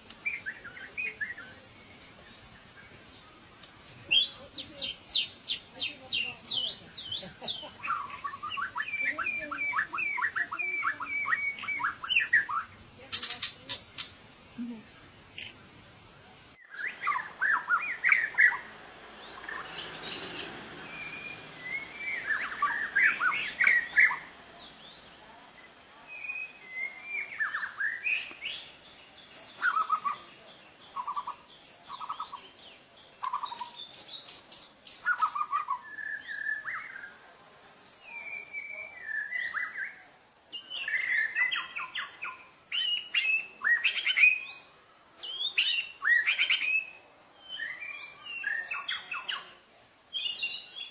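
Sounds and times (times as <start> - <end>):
bird singing whistled phrases: 7.9 - 12.7, 16.6 - 18.6, 20.8 - 24.5, 26.1 - 28.7, 37.8 - 44.6, 45.2 - 50.9.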